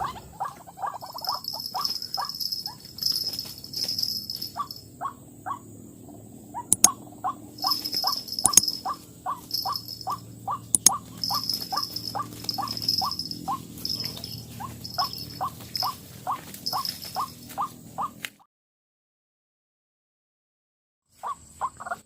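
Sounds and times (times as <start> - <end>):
waterhen calling: 0.0 - 2.3, 6.6 - 18.2.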